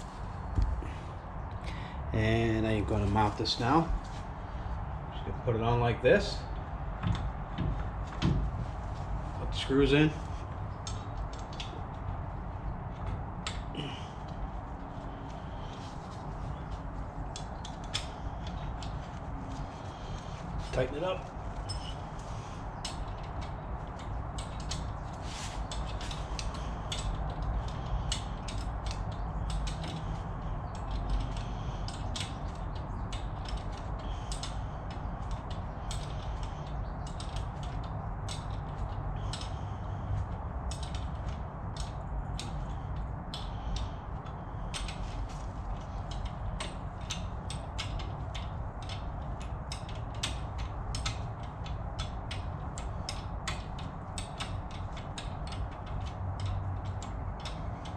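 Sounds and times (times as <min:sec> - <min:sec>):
ratchet wrench clicking: 0:25.6 - 0:45.1, 0:45.8 - 0:57.9.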